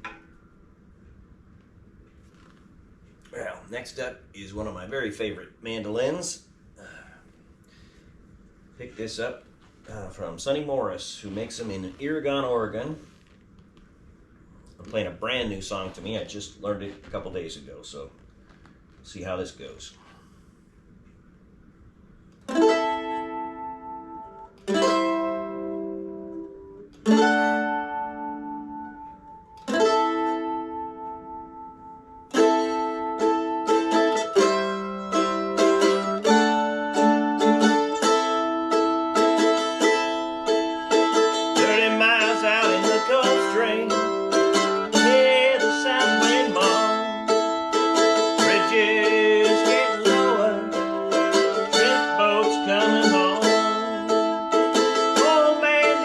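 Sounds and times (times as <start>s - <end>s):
mandolin playing: 22.5s - 56.0s.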